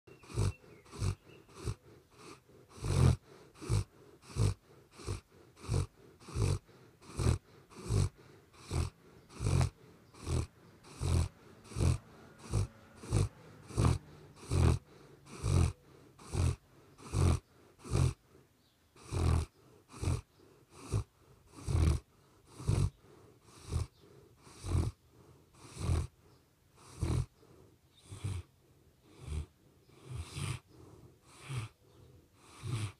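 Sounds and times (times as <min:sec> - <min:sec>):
dog snoring: 0:00.1 - 0:32.9.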